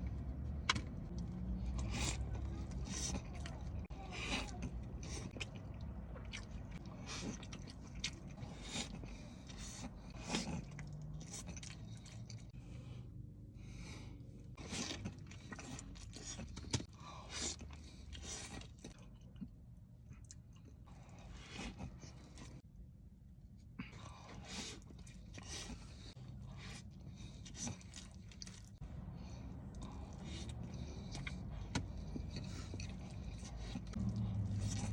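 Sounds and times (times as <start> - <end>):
chewing and crunching chicken wings: 0.0 - 12.6, 14.5 - 22.6, 23.8 - 34.9.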